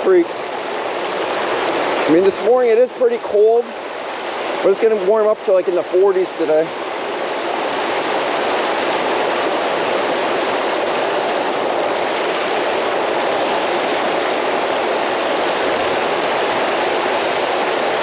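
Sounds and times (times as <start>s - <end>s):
creek flowing over rocks: 0.0s - 18.0s.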